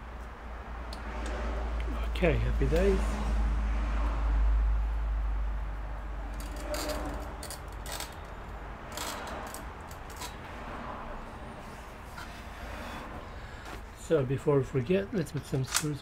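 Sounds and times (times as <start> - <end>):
handling clicks and rustles: 6.3 - 10.5, 14.8 - 16.0.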